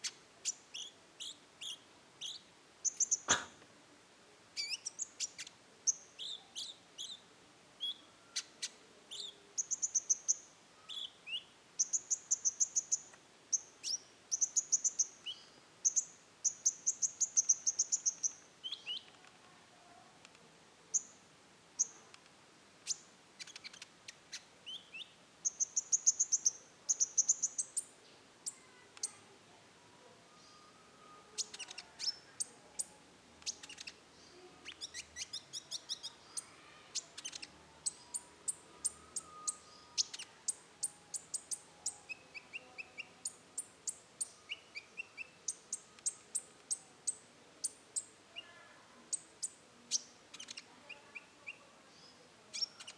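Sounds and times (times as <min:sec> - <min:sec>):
sunbird singing chirps and trills: 0:04.6 - 0:19.1, 0:22.9 - 0:29.2, 0:30.3 - 0:52.9.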